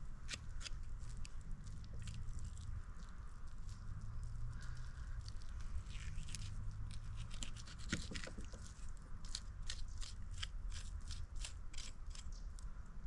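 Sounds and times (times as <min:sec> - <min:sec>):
low steady rumble: 0:00.0 - 0:13.0
knife scraping along bones: 0:05.8 - 0:12.3.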